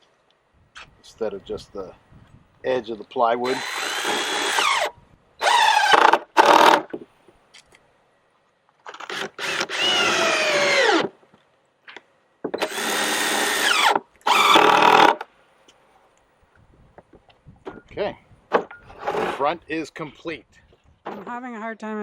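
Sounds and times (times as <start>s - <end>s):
power drill driving screws: 3.4s - 7.0s, 8.9s - 11.1s, 12.6s - 15.3s, 18.8s - 19.4s.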